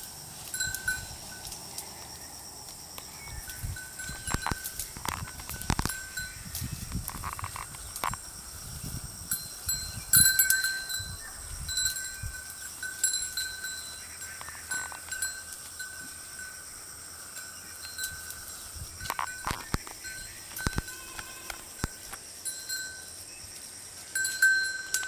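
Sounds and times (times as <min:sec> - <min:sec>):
small bell ringing: 0:00.6 - 0:01.5, 0:03.6 - 0:06.5, 0:09.3 - 0:16.7, 0:17.3 - 0:23.2, 0:24.2 - 0:25.0
goat sounds: 0:19.2 - 0:22.2.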